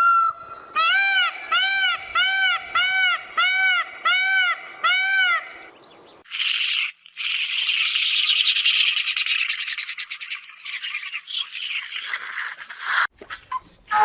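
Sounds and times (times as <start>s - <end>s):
bird calling: 0.0s - 6.2s.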